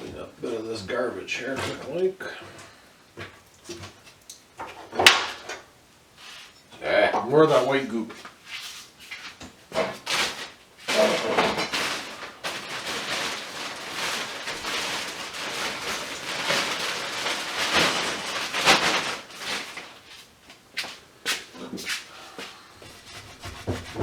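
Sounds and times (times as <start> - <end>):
scraping and rubbing: 8.4 - 20.3, 22.8 - 24.0.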